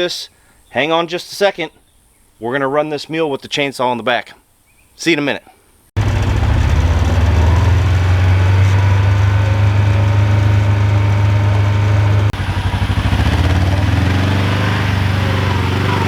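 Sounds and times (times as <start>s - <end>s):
vehicle engine humming: 6.0s - 16.0s.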